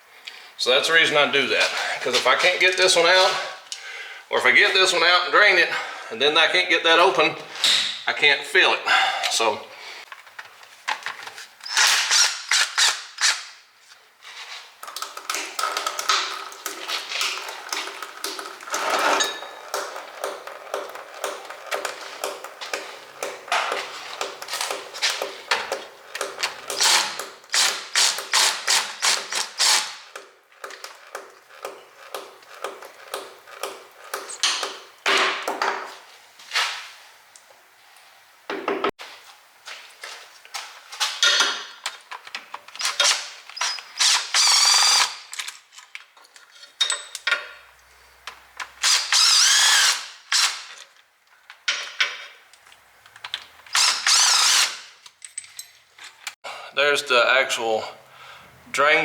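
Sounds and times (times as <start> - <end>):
hand ratchet clicking: 14.8 - 34.9, 42.8 - 45.6, 48.8 - 50.8, 53.7 - 55.2.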